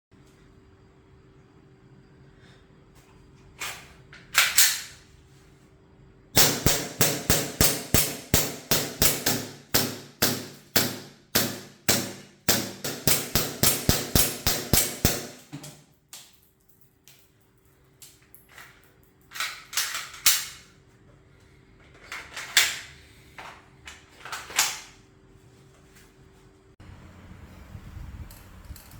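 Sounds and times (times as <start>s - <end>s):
airsoft gun shots: 6.4s - 15.5s.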